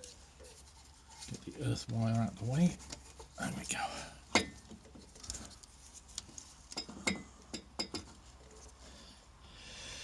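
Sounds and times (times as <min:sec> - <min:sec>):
light clicks and taps of parts: 0:04.3 - 0:08.8.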